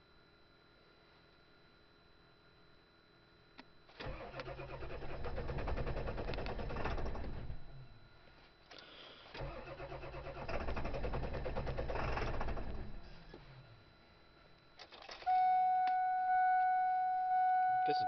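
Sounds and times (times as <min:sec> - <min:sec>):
diesel engine cranking: 0:04.0 - 0:07.6, 0:09.4 - 0:13.0.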